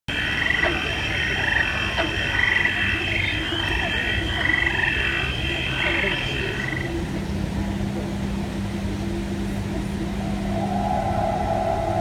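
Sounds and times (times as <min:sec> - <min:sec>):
low rumbling background: 0:00.1 - 0:12.0
frog-like trilling calls: 0:00.2 - 0:07.0.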